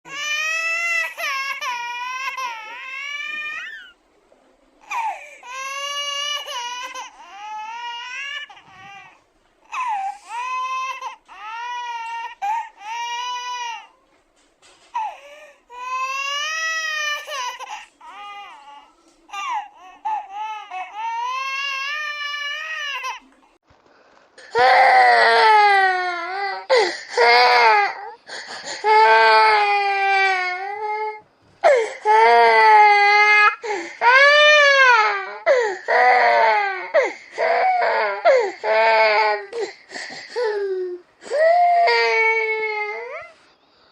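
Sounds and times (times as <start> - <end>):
baby crying: 0.1 - 4.0, 4.8 - 14.0, 15.0 - 23.3.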